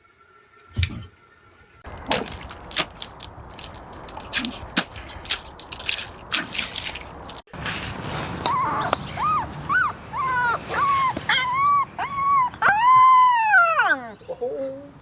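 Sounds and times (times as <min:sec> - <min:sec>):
dog whining: 0:08.4 - 0:14.9.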